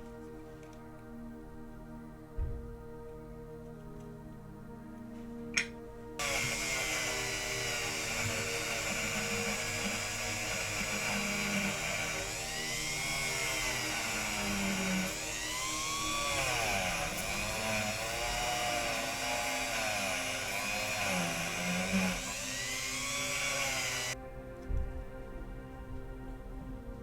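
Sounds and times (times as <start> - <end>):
rotary wire brush whirring: 6.2 - 24.2.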